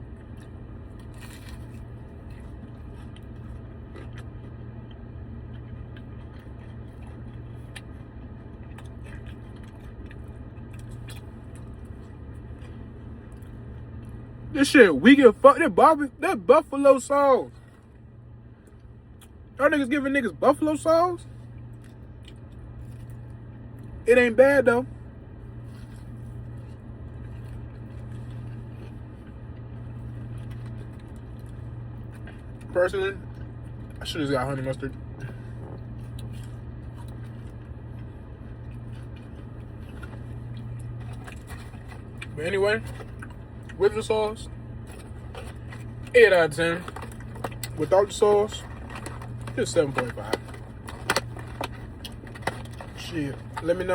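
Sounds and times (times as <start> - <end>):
person biting and chewing: 0.0 - 14.1
faint chewing: 0.0 - 14.3, 21.4 - 23.9, 25.5 - 34.0, 34.9 - 53.9
steady low hum: 0.0 - 53.9
faint clicks and crunches: 0.2 - 14.2, 34.9 - 43.8, 44.8 - 53.9.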